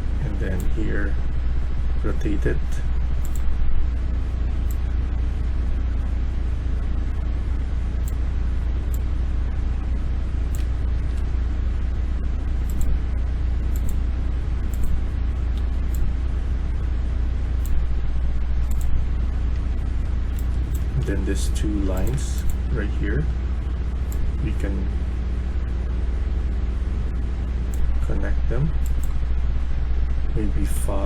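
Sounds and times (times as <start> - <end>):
low electrical hum: 0.0 - 31.0
computer mouse clicks: 3.2 - 3.5, 10.5 - 11.2, 12.6 - 13.0, 13.7 - 14.0, 14.7 - 16.1, 17.6 - 17.8, 18.6 - 19.0, 21.9 - 22.6, 28.8 - 29.2.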